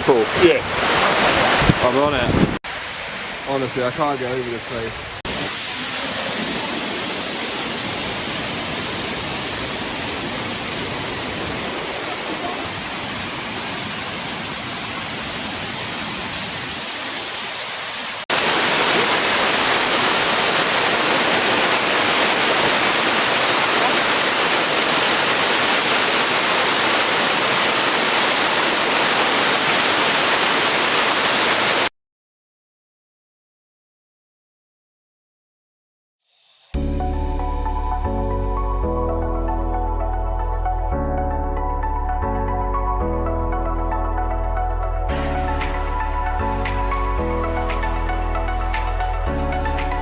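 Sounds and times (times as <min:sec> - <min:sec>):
waterfall rushing: 0:00.0 - 0:04.6, 0:05.3 - 0:31.9, 0:45.1 - 0:50.0.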